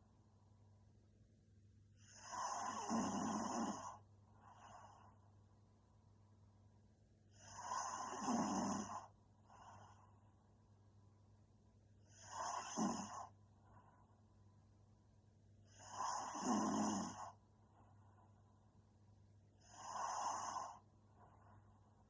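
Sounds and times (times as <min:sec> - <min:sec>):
woman snoring: 0:02.0 - 0:05.0, 0:07.4 - 0:09.8, 0:12.1 - 0:13.3, 0:15.7 - 0:17.4, 0:19.6 - 0:20.8.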